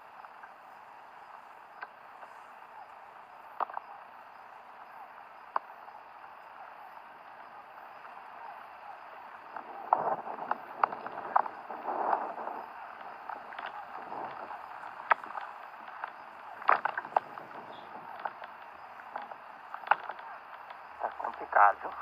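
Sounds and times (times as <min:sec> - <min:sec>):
steady rain hiss: 0:00.0 - 0:22.0
raindrops tapping on microphone: 0:09.3 - 0:22.0.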